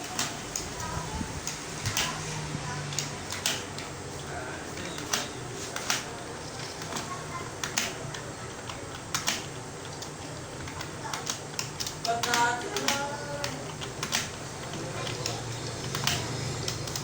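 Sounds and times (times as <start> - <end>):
keyboard typing clicks: 4.8 - 17.0.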